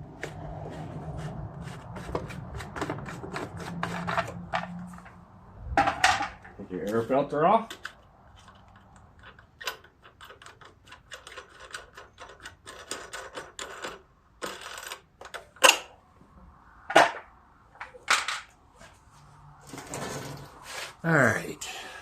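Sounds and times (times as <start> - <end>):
air filter parts clicking and rattling: 1.8 - 5.2, 5.8 - 15.9.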